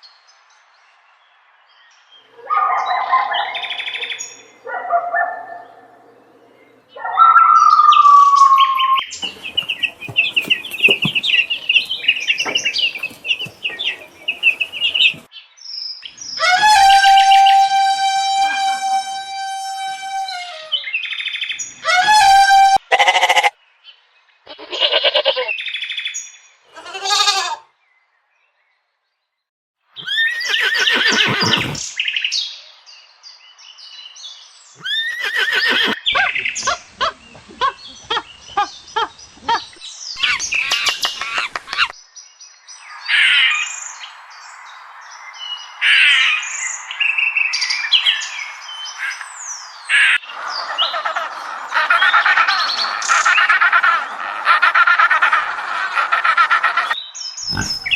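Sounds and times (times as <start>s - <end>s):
birds chirping: 2.2s - 15.4s, 30.0s - 32.2s, 34.7s - 57.9s
quick repeated animal calls: 50.6s - 57.9s.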